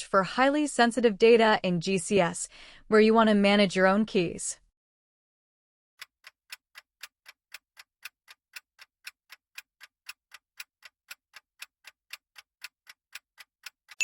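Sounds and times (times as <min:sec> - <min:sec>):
clock ticking: 0:06.0 - 0:14.0.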